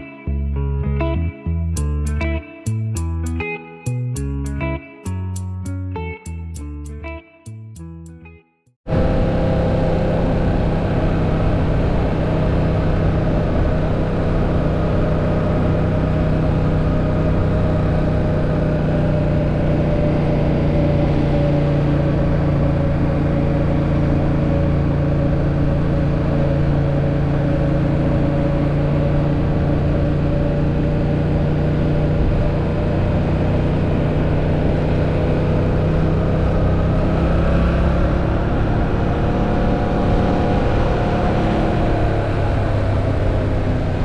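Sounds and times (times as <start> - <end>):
motorcycle engine running: 8.9 - 44.0.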